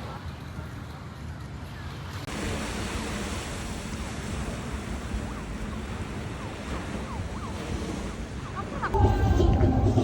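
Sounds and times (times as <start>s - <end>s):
sea waves washing on shore: 2.1s - 9.0s.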